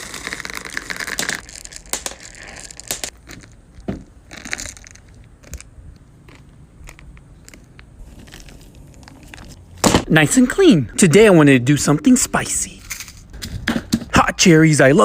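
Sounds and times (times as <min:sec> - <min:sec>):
crinkling and crunching handling: 0:00.0 - 0:10.0.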